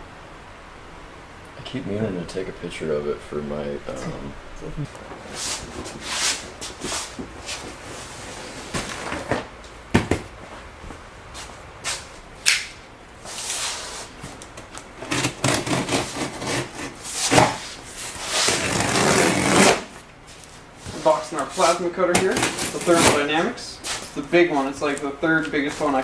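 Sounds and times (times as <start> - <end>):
cardboard packaging rustling: 5.0 - 12.0, 13.2 - 26.0.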